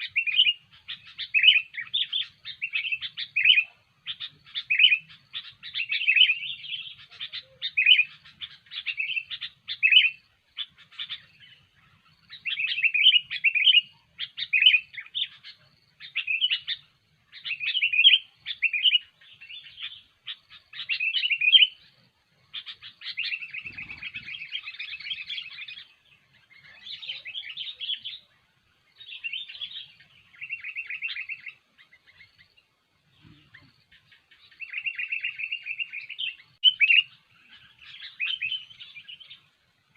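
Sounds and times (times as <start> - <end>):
fast chattering bird notes: 22.6 - 25.4.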